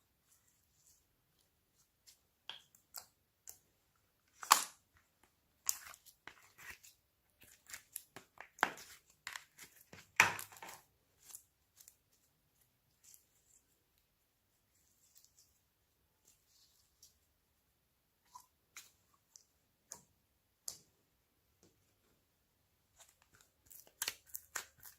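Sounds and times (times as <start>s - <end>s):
hands squishing slime: 22.9s - 24.9s.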